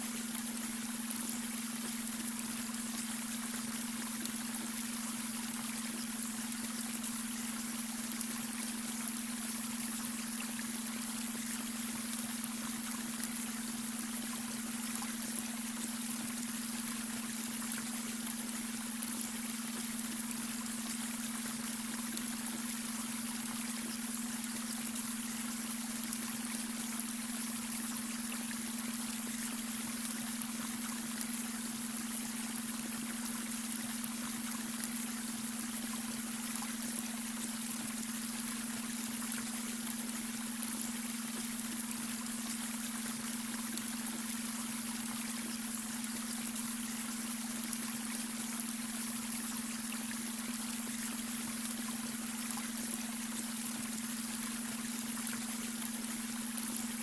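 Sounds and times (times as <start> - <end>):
brook babbling: 0.0 - 57.0.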